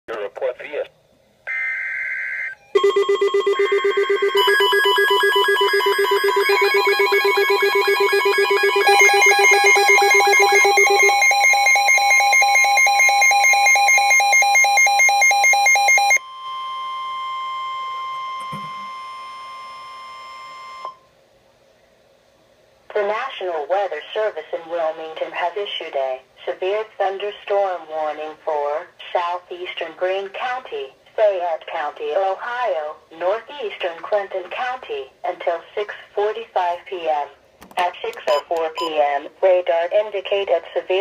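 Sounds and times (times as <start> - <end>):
electronic alarm tones pulsing: 1.5 - 21.0
steady alert tone: 2.6 - 16.2.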